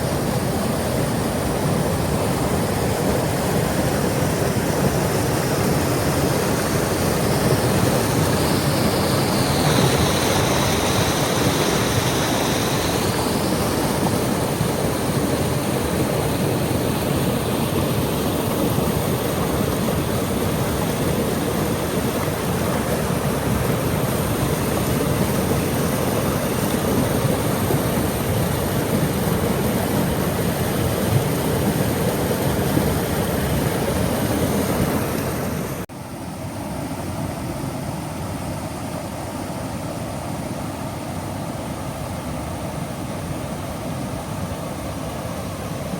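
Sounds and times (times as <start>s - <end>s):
waterfall rushing: 0.0s - 35.9s.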